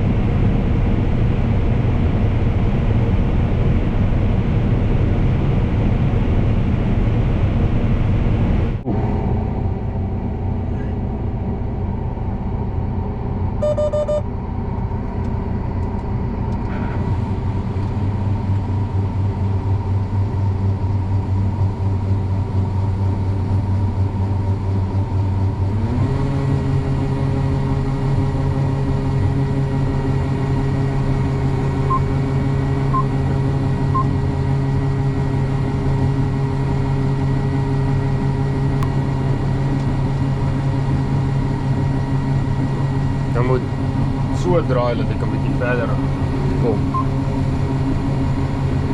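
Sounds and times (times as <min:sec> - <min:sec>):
combine harvester engine running: 0:00.0 - 0:48.9
short electronic beeps: 0:13.6 - 0:14.3, 0:31.9 - 0:32.1.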